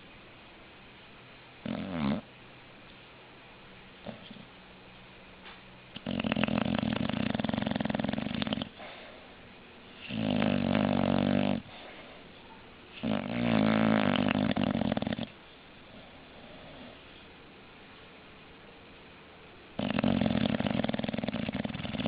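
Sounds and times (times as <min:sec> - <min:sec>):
dog snoring: 0:01.6 - 0:02.3, 0:05.9 - 0:09.1, 0:09.9 - 0:12.1, 0:12.9 - 0:17.0, 0:19.8 - 0:22.0.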